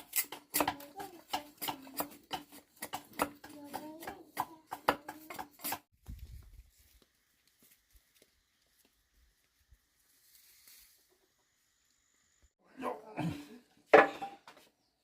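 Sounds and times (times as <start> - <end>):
taps and knocks on wooden parts: 0.6 - 5.7.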